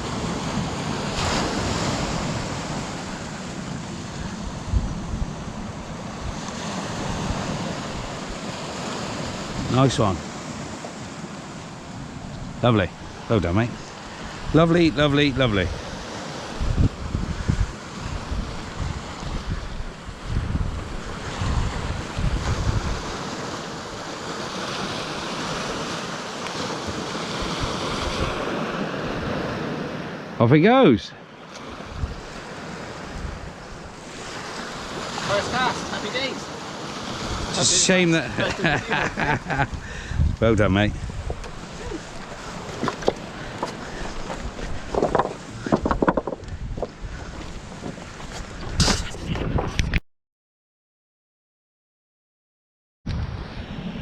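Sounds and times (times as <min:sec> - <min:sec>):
wind on microphone: 0:00.0 - 0:10.7, 0:11.8 - 0:26.0, 0:26.6 - 0:29.8, 0:31.8 - 0:35.4, 0:36.9 - 0:50.0, 0:53.1 - 0:54.0
surf breaking on a beach: 0:00.0 - 0:49.7.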